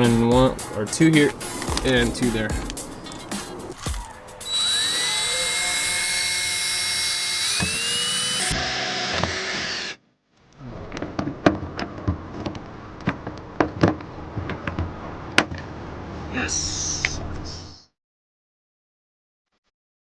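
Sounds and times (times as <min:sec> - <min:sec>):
cordless drill whining: 0:02.6 - 0:09.9.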